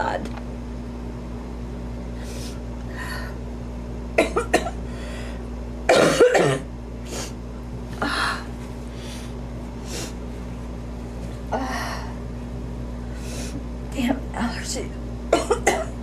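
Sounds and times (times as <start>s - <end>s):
woman talking: 0.0s - 0.3s, 13.9s - 15.0s
woman breathing: 2.2s - 3.4s, 4.8s - 5.5s, 8.0s - 10.2s, 11.5s - 12.2s, 13.0s - 13.6s
woman coughing: 4.2s - 4.8s, 5.9s - 6.7s, 15.3s - 16.0s.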